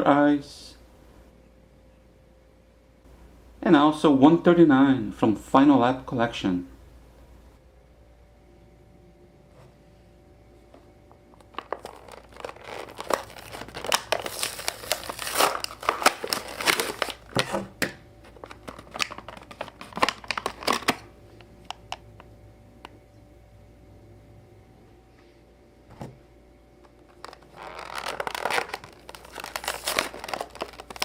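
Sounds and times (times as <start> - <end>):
packaging crinkling and tearing: 11.3 - 17.6, 18.2 - 21.1, 26.8 - 31.0.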